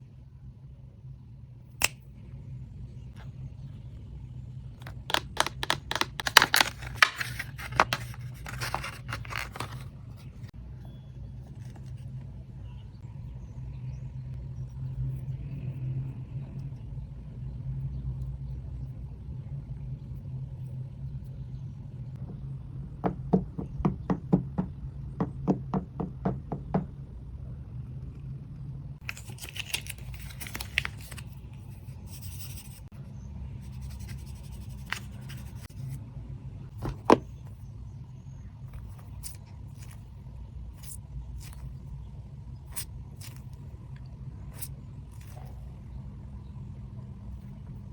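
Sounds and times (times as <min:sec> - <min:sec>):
steady low hum: 0:00.0 - 0:47.9.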